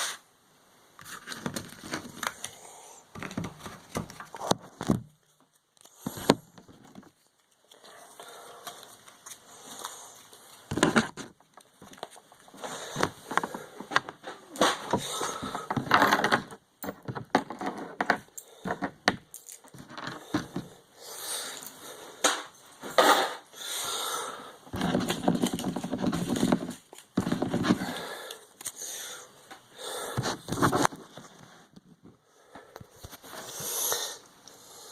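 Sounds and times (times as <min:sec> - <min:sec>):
paper and plastic rustling: 0:01.0 - 0:02.6, 0:03.2 - 0:16.5, 0:24.7 - 0:27.9, 0:30.2 - 0:32.1
game pieces clicking and knocking: 0:13.0 - 0:20.7.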